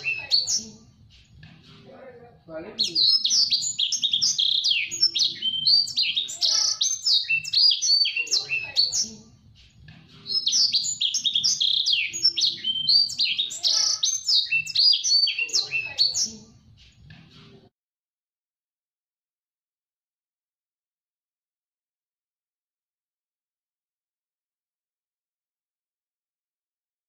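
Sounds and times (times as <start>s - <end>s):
bird singing chirps and trills: 0.0s - 0.8s, 2.8s - 9.2s, 10.3s - 16.5s.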